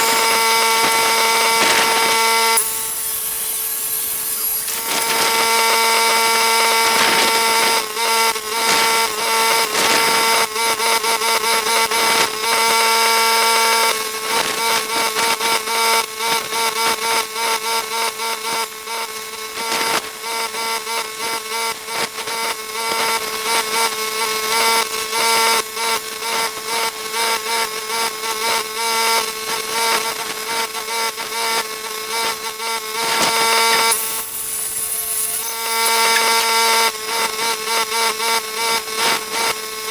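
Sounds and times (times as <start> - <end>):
angle grinder on steel: 0.0 - 10.3, 32.2 - 39.5.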